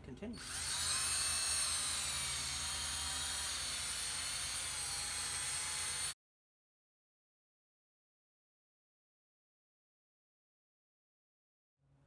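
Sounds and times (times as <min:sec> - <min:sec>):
electric drill whining: 0:00.4 - 0:06.2.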